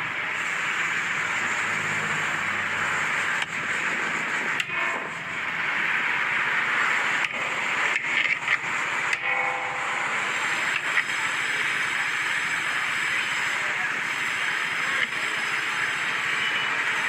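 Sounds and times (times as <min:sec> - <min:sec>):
steady cooking hiss: 0:00.0 - 0:17.0.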